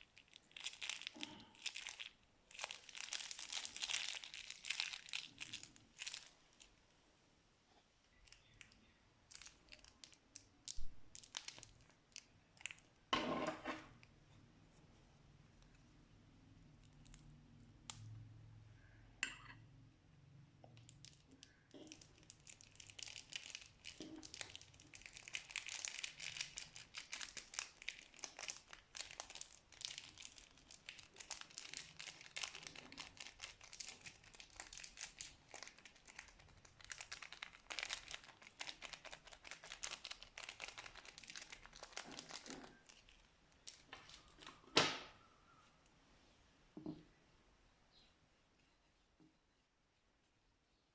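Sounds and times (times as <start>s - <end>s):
slime crinkling in plastic bags: 0.0s - 6.8s, 8.1s - 13.1s, 20.8s - 44.7s.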